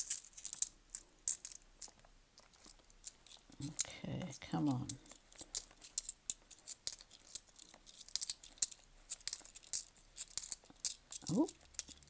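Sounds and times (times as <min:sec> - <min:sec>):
coins clinking: 0:00.0 - 0:01.9, 0:04.5 - 0:12.0.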